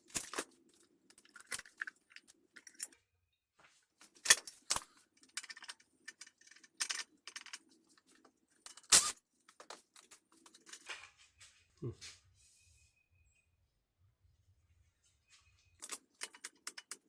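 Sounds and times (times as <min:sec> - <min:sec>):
metal parts and tools clinking: 0:00.0 - 0:03.0, 0:04.0 - 0:11.0, 0:15.8 - 0:17.0.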